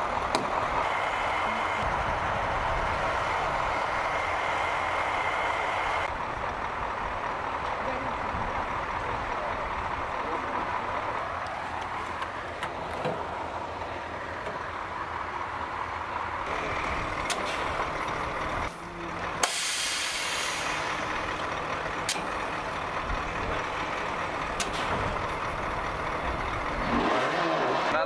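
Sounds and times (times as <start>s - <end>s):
vehicle engine running: 0.0s - 27.3s
hiss of released air: 19.4s - 20.8s.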